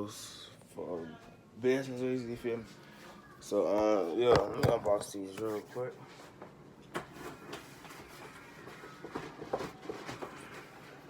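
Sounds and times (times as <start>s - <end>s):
cardboard box knocks: 4.4s - 5.0s.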